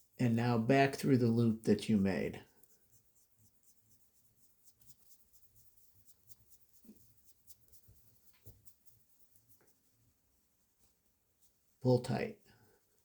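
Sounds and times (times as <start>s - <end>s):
wire scratching and ticking: 2.5s - 9.9s.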